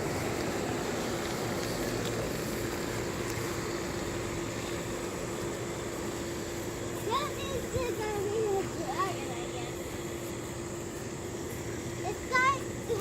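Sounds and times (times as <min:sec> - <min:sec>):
electric blower fan humming: 0:00.0 - 0:13.0.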